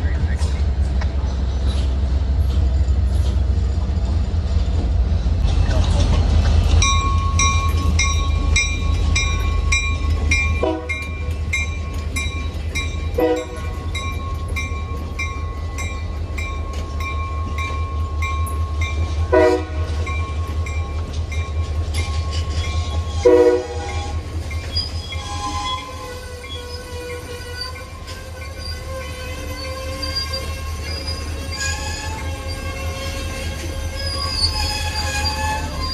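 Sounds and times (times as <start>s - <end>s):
diesel locomotives rumbling: 0.0s - 35.9s
train horn toots: 10.6s - 11.2s, 13.1s - 13.8s, 19.3s - 20.0s, 23.1s - 24.3s, 25.2s - 33.6s.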